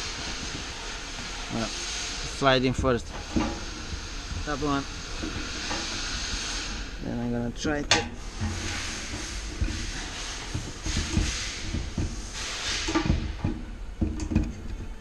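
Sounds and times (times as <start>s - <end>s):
steady hiss: 0.0s - 15.0s
plastic parts knocking and scraping: 7.9s - 15.0s.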